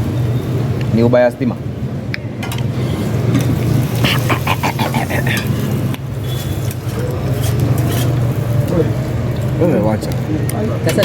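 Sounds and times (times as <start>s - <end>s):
busy outdoor background hum: 0.0s - 11.0s
indistinct voices or clatter: 4.0s - 5.7s.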